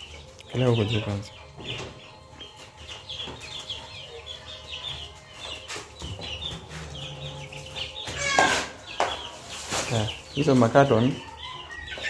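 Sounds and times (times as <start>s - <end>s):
chicks peeping: 0.0s - 12.0s.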